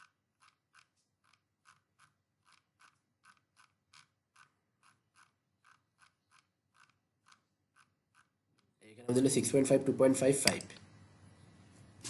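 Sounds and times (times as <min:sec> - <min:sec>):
mouse scroll wheel ticking: 0:00.0 - 0:08.8.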